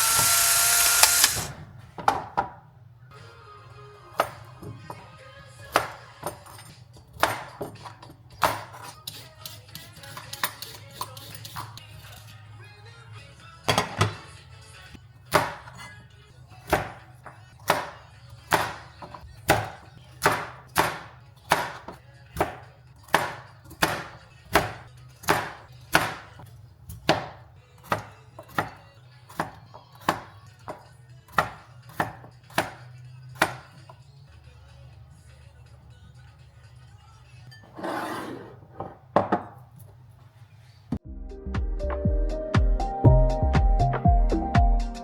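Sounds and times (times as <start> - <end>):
knife chopping on cutting board: 7.1 - 11.7, 15.3 - 15.9, 16.6 - 34.0.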